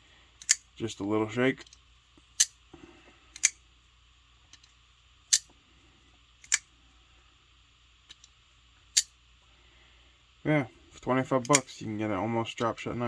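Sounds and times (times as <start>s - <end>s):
folding knife blade clicking: 0.4s - 0.6s, 3.4s - 3.6s, 5.3s - 5.5s, 6.4s - 6.6s, 11.4s - 11.7s.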